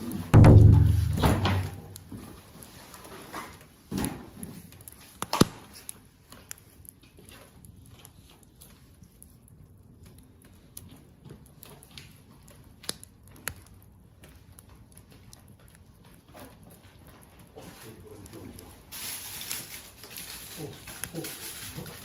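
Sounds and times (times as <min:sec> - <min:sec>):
bonfire crackling and popping: 0:00.0 - 0:22.0
loud wood snap: 0:05.2 - 0:05.8.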